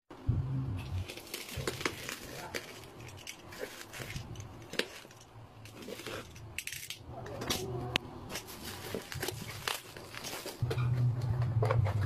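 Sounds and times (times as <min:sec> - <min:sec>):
low hum: 0:00.1 - 0:02.2, 0:10.6 - 0:12.0.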